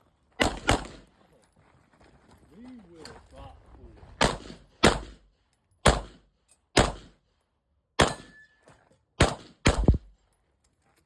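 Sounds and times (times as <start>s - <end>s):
gunshots: 0.4s - 1.0s, 4.2s - 7.2s, 8.0s - 8.4s, 9.2s - 10.1s.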